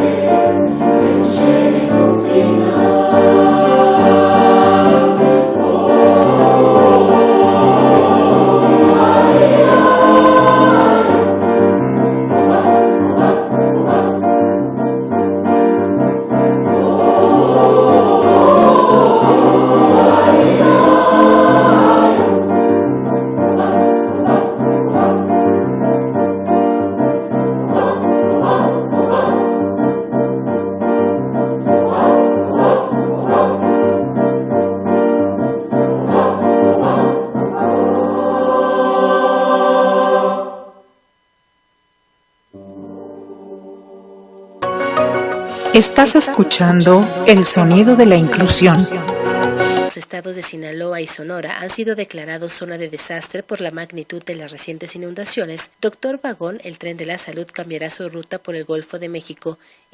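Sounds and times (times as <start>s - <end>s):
choir singing: 0.0s - 14.6s, 16.6s - 26.4s, 27.3s - 30.6s, 31.4s - 34.9s, 35.7s - 40.8s, 42.6s - 49.7s.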